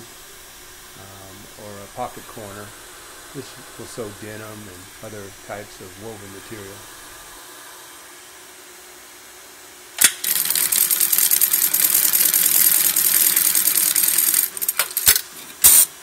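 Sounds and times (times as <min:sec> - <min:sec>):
faint machine hum: 0:00.0 - 0:16.0
sewing machine stitching: 0:10.2 - 0:15.0
sewing machine clack: 0:10.2 - 0:15.9.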